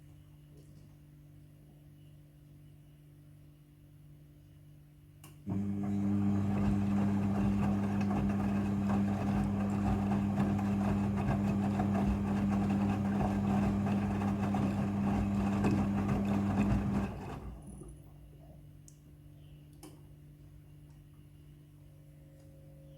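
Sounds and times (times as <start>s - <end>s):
washing machine hum: 5.4s - 18.2s.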